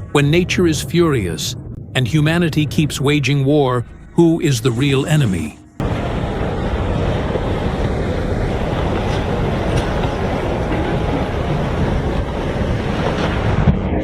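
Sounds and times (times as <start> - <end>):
loud low rumbling: 0.0 - 14.0.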